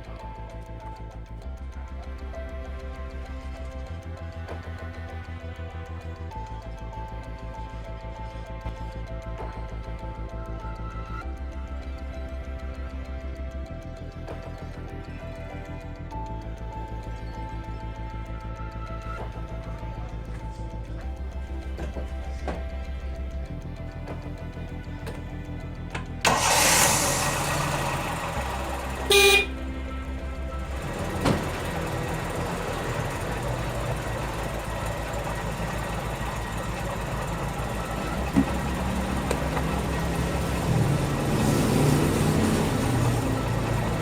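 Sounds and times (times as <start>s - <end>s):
background music with bass: 0.0s - 44.0s
small car engine running: 0.0s - 44.0s
car horn beep: 28.9s - 29.7s.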